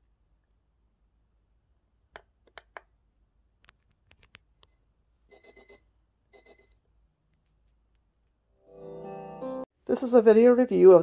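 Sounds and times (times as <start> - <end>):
alarm clock beeping: 4.7 - 6.8.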